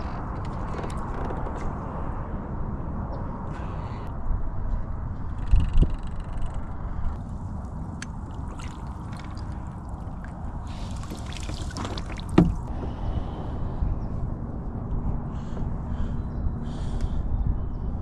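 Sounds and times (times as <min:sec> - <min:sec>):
steady low rumble: 0:00.0 - 0:18.0
water trickling and splashing: 0:07.2 - 0:12.8
knock on kayak: 0:11.9 - 0:12.7.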